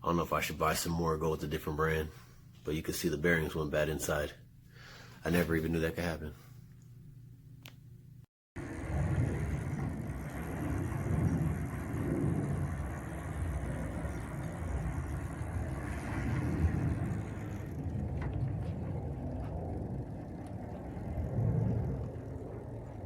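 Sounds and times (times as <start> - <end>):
steady low rumbling: 8.6 - 23.0.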